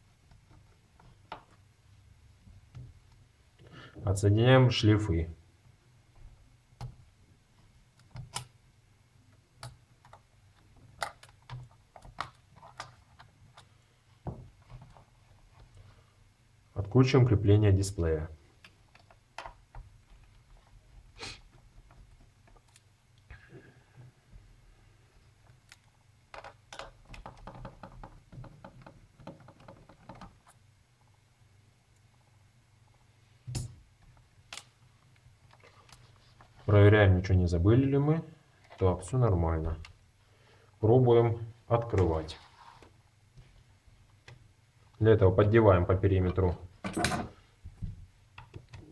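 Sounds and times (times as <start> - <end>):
small clicks and taps on plastic: 25.5 - 30.6, 47.7 - 48.9.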